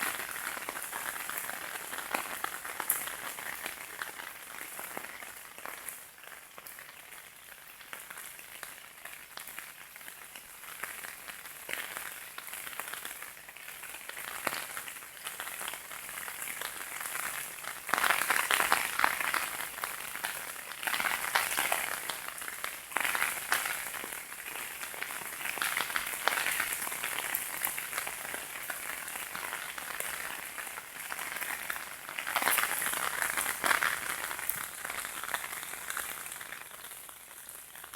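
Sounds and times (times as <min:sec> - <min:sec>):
heavy rain drumming on surfaces: 0:14.4 - 0:37.9.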